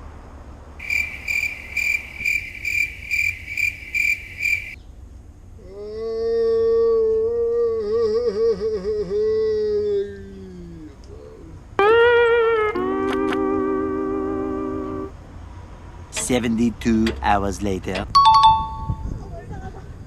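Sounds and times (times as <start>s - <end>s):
cricket chirping: 0.8s - 4.8s
long held musical note: 11.8s - 15.1s.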